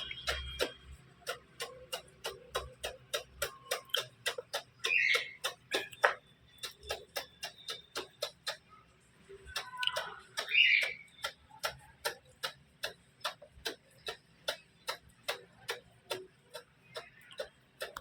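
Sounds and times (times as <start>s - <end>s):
sharp clicks: 0.0s - 18.0s.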